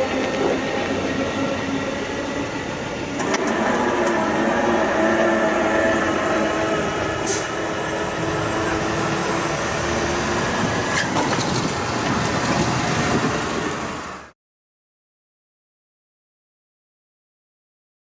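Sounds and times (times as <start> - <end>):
train rumbling past: 0.0 - 14.3
wheel clicks on rail joints: 10.8 - 14.2.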